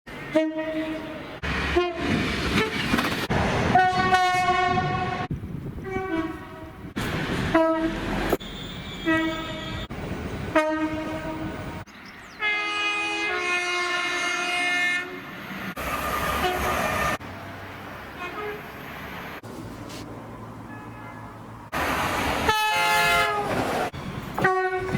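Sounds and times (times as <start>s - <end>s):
passing train rail noise: 0.1s - 24.9s
train horn blasts: 0.3s - 2.7s, 3.7s - 6.8s, 7.5s - 9.9s, 10.5s - 11.5s, 12.4s - 15.2s, 16.4s - 17.2s, 22.4s - 23.6s, 24.3s - 24.9s.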